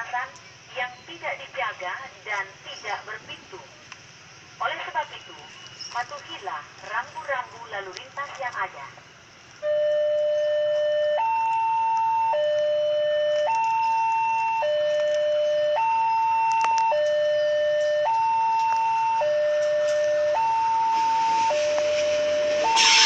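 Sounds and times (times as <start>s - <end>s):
two-tone level crossing alarm: 9.6s - 23.0s.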